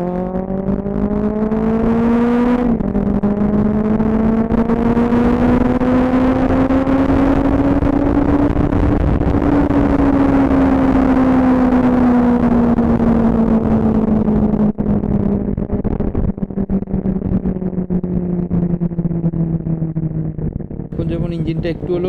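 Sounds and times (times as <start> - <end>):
motorcycle engine revving: 0.0 - 22.0
rushing riding noise: 20.9 - 22.0.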